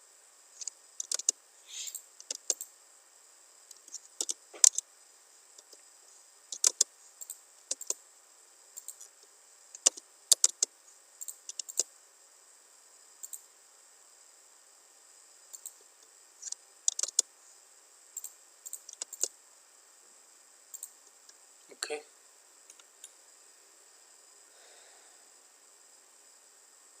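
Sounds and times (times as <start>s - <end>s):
faint high hiss: 0.0s - 27.0s
mouse and keyboard clicks: 0.6s - 2.7s, 3.7s - 4.8s, 6.5s - 8.0s, 8.8s - 9.1s, 9.8s - 11.9s, 16.4s - 17.3s, 18.2s - 19.3s.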